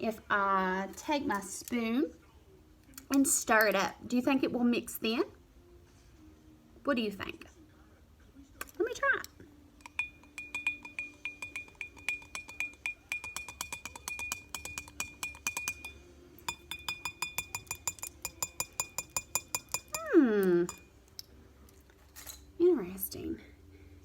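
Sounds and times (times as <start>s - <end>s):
spoon clinking in glass jar: 9.8s - 20.9s.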